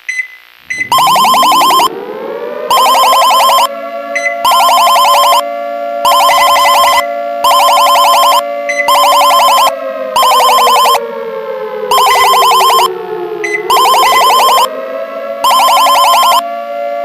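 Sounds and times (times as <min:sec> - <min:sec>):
high pulsing alarm beeps: 0:00.1 - 0:02.0, 0:02.7 - 0:05.4, 0:06.0 - 0:11.0, 0:11.9 - 0:14.7, 0:15.4 - 0:16.4
multi-tone siren: 0:00.7 - 0:17.0.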